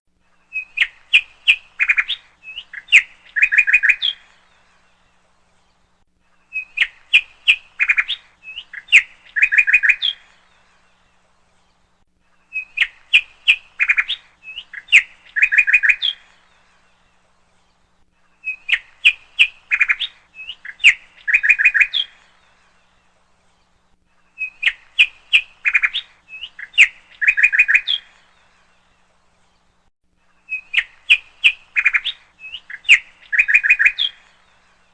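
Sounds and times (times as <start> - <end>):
bird chirps and trills: 0.3 - 34.9.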